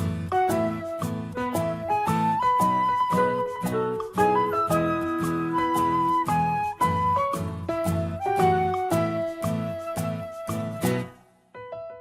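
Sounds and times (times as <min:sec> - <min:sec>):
bouncy beat of plucked chords: 0:00.0 - 0:11.2
flute-like melody: 0:00.0 - 0:11.4.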